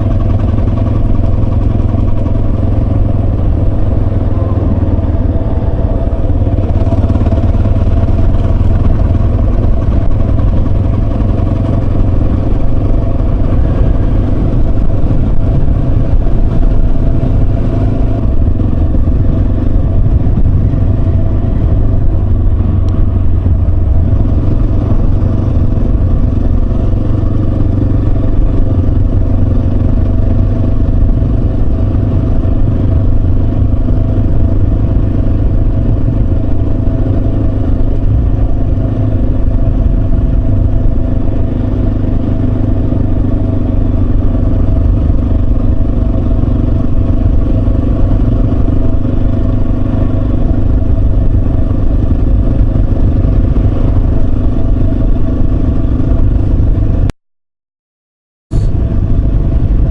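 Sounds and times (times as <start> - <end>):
motorcycle engine cruising: 0.0 - 57.1, 58.5 - 59.9.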